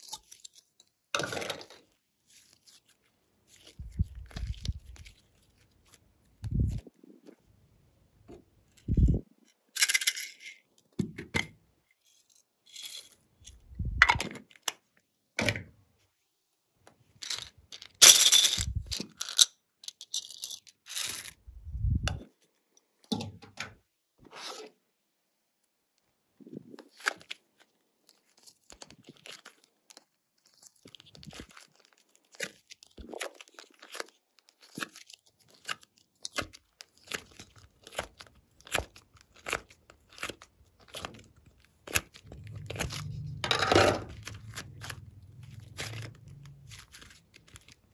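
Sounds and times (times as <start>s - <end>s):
slime crackling and tearing: 26.7s - 47.9s.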